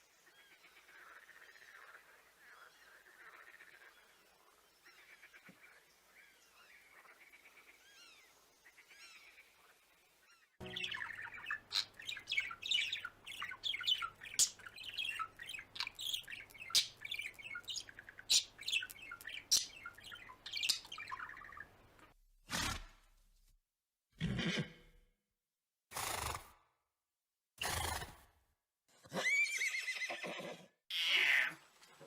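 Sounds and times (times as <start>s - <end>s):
birds chirping and squawking: 10.6s - 21.8s.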